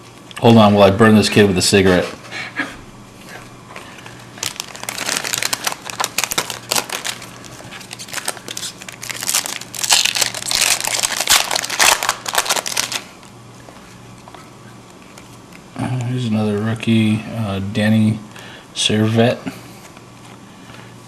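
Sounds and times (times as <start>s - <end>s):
foil wrapper crinkling: 3.8s - 13.3s.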